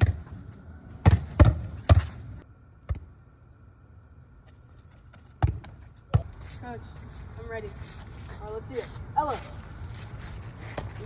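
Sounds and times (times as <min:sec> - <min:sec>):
ball thumping: 0:01.0 - 0:03.1, 0:05.4 - 0:06.3.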